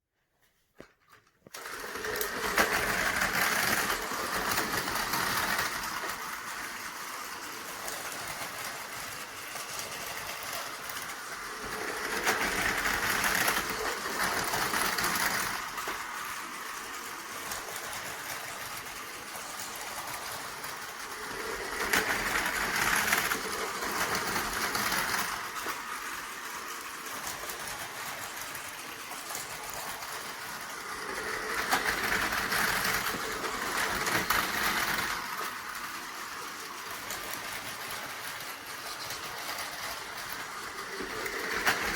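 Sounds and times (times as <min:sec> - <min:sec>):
toy train motor whir and rattle: 0:01.1 - 0:41.9.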